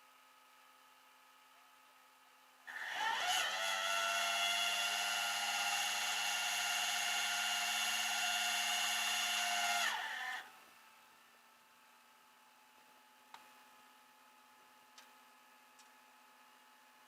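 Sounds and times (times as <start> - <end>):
small electric motor whining: 2.7 - 10.6.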